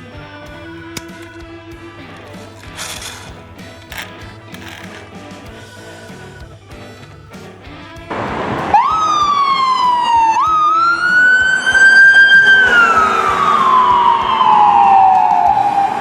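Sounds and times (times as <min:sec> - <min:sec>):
siren wailing: 0:08.1 - 0:16.0.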